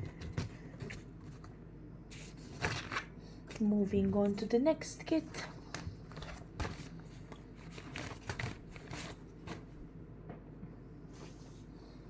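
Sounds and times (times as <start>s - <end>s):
packaging rustling: 6.0s - 9.7s.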